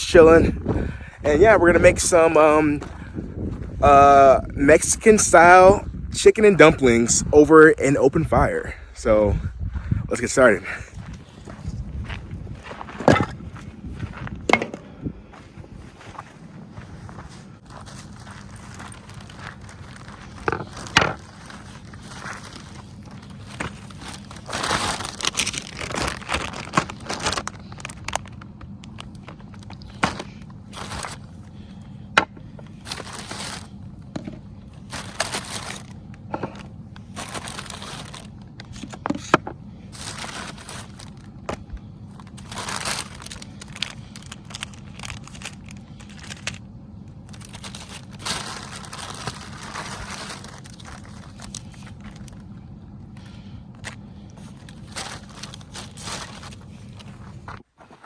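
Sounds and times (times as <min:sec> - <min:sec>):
faint low hum: 0:00.0 - 0:58.0
rustling and crinkling: 0:11.0 - 0:58.0
knocks of things being handled: 0:14.5 - 0:14.9.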